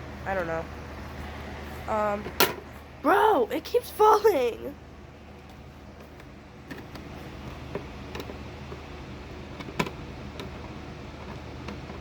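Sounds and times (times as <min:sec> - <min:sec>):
fridge low hum: 0:00.0 - 0:12.0
items clicking on shelves: 0:05.4 - 0:08.9, 0:09.5 - 0:12.0.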